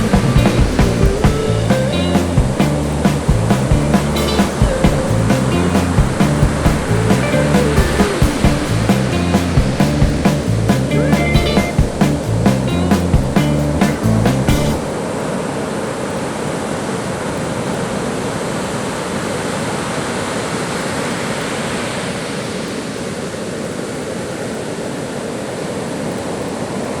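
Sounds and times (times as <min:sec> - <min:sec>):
background music: 0:00.0 - 0:14.9
ocean surf breaking on beach: 0:03.0 - 0:09.9, 0:14.8 - 0:27.0.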